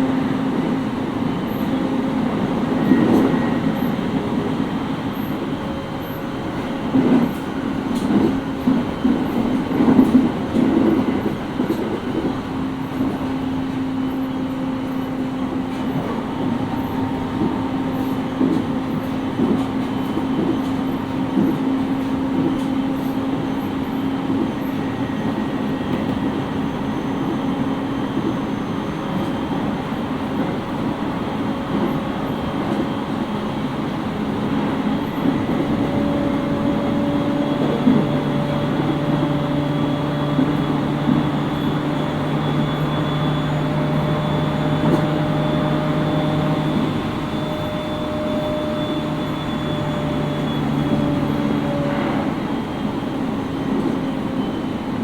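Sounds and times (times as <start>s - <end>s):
train wheels rumbling on rails: 0.0s - 55.0s.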